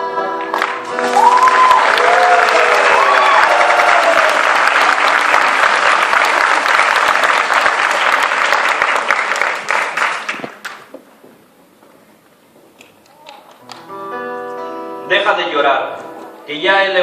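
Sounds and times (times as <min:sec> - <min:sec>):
audience applauding: 0:00.4 - 0:10.9.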